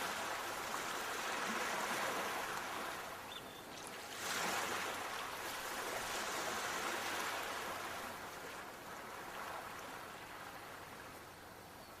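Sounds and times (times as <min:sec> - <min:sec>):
sea waves washing on shore: 0:00.0 - 0:11.4.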